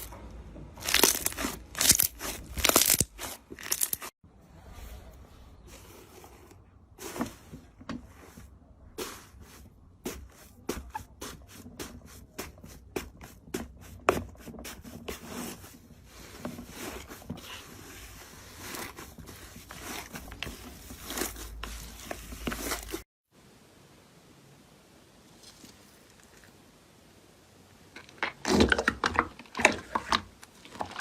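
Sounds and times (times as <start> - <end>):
slime popping and crackling: 0.8 - 4.1.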